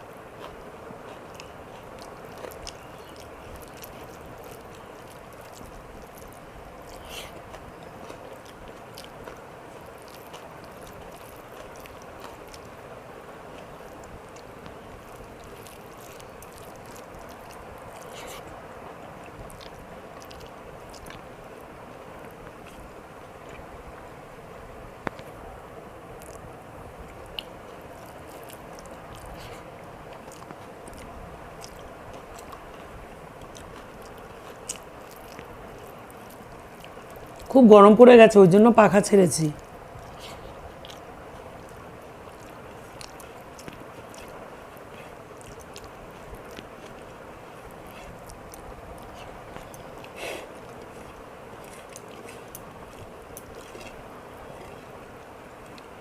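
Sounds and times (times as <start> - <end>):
electric fan whirring: 0.0 - 56.0
chewing: 0.3 - 24.1, 26.1 - 37.5, 39.6 - 56.0
wet mouth clicks: 39.6 - 55.0.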